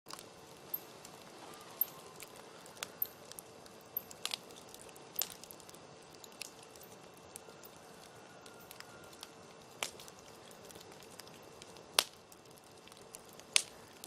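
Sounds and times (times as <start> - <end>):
campfire crackling: 0.1 - 14.0
fire pops and snaps: 0.1 - 14.0.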